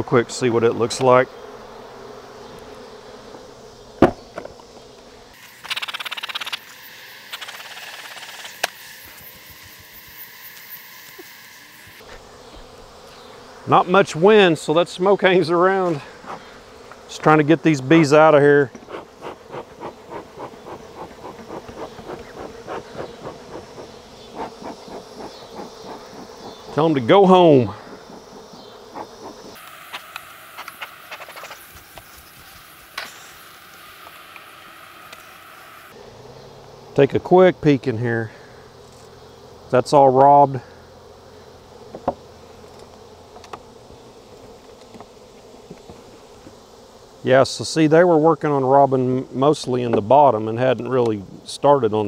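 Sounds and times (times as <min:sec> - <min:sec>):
faint bee buzzing: 0:00.0 - 0:52.0
wooden hive boxes cracking apart: 0:05.6 - 0:06.7.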